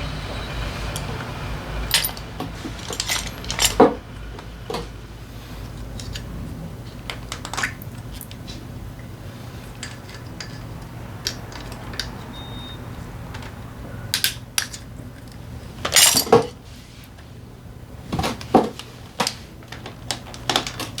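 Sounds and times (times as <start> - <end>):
metal parts clattering: 1.9 - 4.0, 9.7 - 12.1, 14.1 - 16.5.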